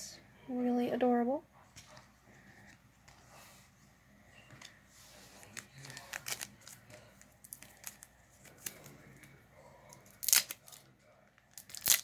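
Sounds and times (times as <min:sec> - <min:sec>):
foil wrapper crinkling: 0:05.8 - 0:09.1, 0:10.0 - 0:10.9, 0:11.5 - 0:12.0.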